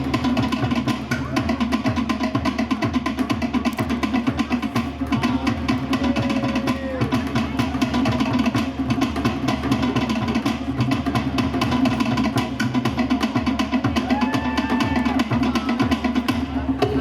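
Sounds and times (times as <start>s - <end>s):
other percussion: 0.0s - 17.0s
rapid wooden slit drums: 0.0s - 17.0s.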